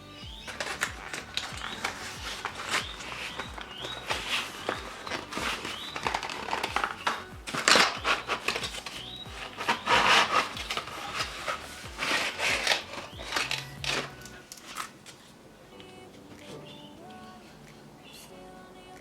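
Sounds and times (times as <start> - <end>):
background music with steady beat: 0.0 - 19.0
packaging rustling: 0.4 - 15.5.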